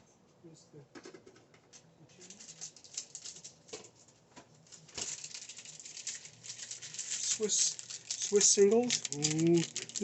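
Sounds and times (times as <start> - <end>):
plastic packaging crinkling: 2.2 - 10.0.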